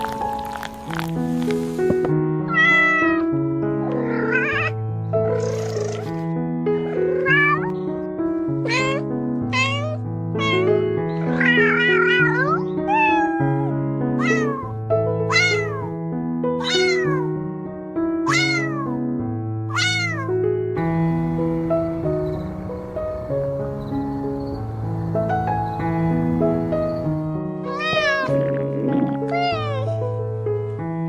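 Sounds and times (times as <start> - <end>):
slow background music: 0.0 - 16.4, 20.4 - 31.0
cat meowing: 2.5 - 4.8, 6.8 - 7.8, 8.7 - 14.7, 15.3 - 15.9, 16.6 - 17.3, 18.2 - 19.0, 19.7 - 20.3, 21.2 - 29.9.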